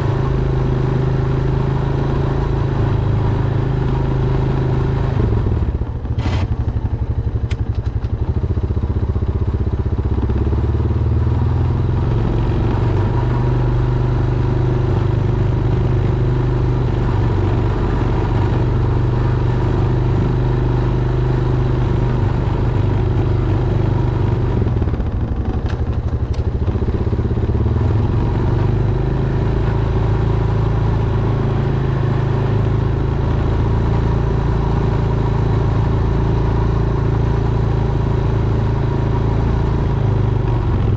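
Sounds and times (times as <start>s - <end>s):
atv engine running under load: 0.0s - 40.9s.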